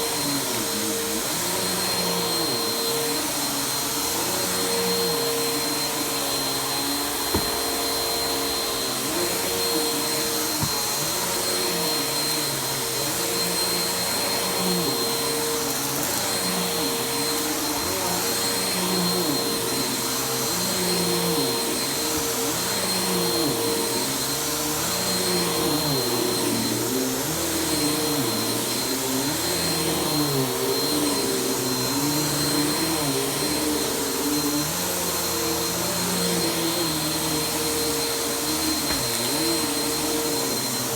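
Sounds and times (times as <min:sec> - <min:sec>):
vacuum cleaner running: 0:00.0 - 0:40.9.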